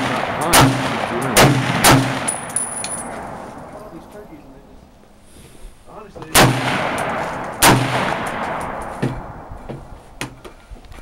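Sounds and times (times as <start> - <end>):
gunshots echoing: 0.0 - 4.1, 6.3 - 9.5.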